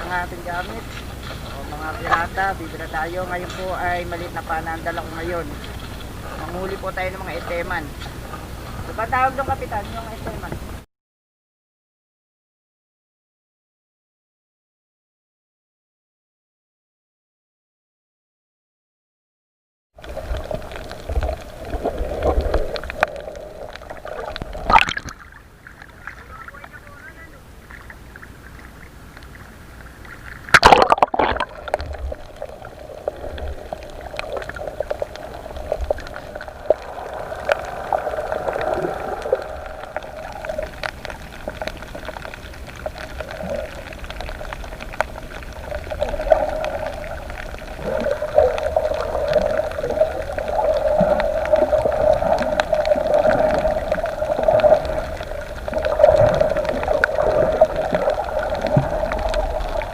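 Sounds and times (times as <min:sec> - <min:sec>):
water splash: 0:20.0 - 0:28.9, 0:29.9 - 0:59.9
underwater gurgling and bubbling: 0:20.0 - 0:59.9.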